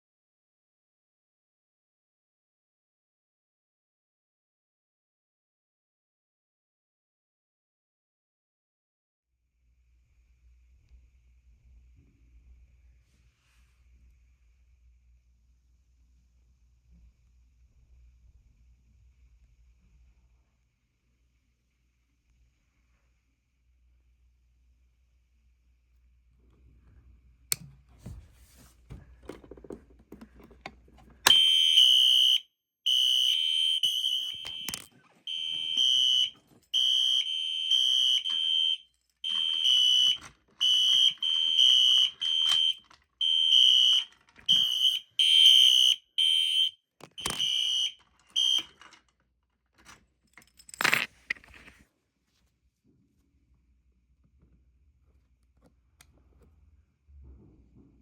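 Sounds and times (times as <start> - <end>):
fire alarm pulsing tone: 31.3 - 48.8.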